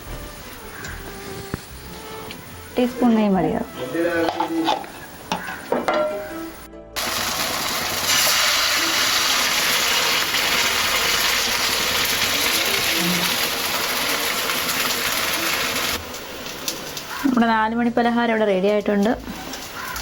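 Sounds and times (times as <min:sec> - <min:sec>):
ghee sizzling in a pan: 0:07.0 - 0:20.0.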